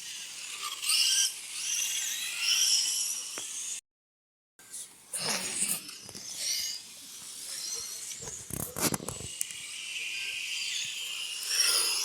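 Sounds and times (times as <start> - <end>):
rc car motors whining: 0.0 - 3.8, 4.6 - 12.0.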